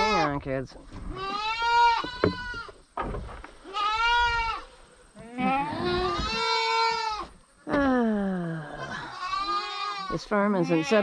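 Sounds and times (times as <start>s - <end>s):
goats bleating: 0.0s - 0.4s, 1.1s - 2.7s, 3.6s - 7.4s, 8.7s - 11.0s.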